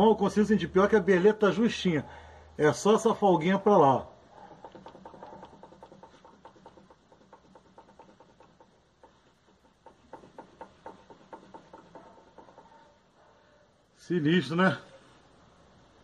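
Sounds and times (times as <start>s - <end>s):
rapid metal clicking and knocking: 4.4s - 13.0s.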